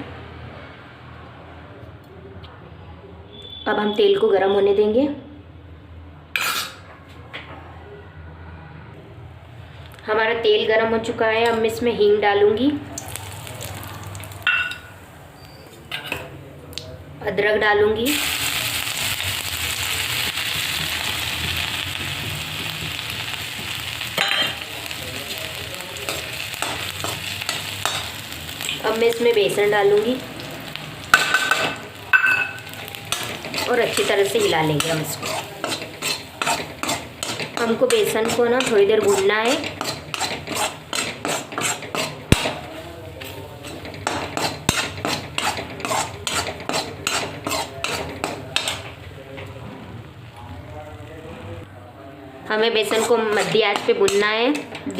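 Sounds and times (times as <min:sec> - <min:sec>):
spices sizzling in hot oil: 0:13.0 - 0:15.8, 0:18.0 - 0:48.9, 0:52.7 - 0:54.9
spoon stirring and scraping: 0:25.3 - 0:28.8, 0:31.2 - 0:49.0, 0:52.7 - 0:54.9.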